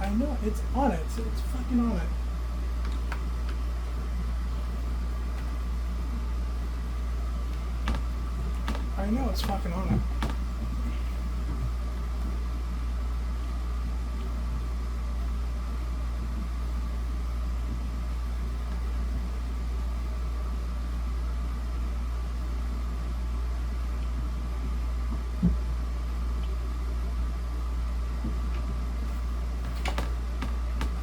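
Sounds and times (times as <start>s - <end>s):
low mechanical hum: 0.0s - 31.0s.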